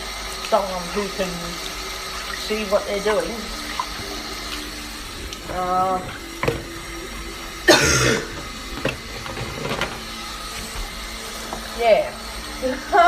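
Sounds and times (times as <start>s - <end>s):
person coughing: 7.7s - 8.4s.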